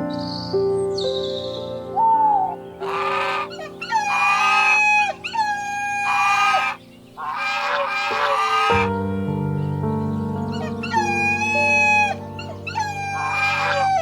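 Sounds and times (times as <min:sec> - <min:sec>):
soft piano music: 0:00.0 - 0:14.0
animal crying: 0:02.0 - 0:08.9, 0:10.5 - 0:14.0.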